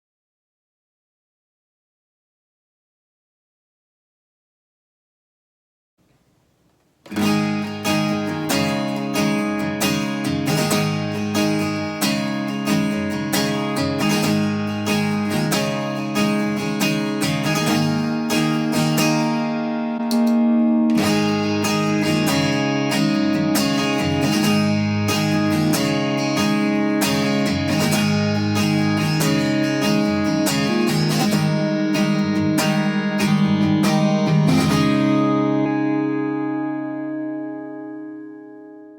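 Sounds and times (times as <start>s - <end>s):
acoustic guitar strummed in chords: 7.0s - 38.9s.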